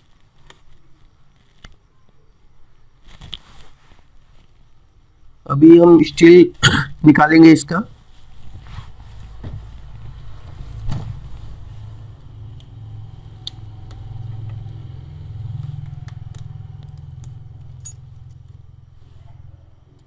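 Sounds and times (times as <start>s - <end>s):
steady low hum: 4.0s - 20.0s.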